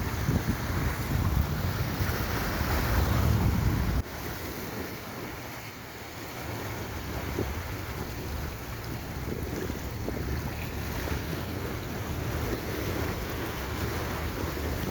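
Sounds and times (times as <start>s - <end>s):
sea waves: 0.0s - 14.9s
wind buffeting microphone: 0.0s - 14.9s.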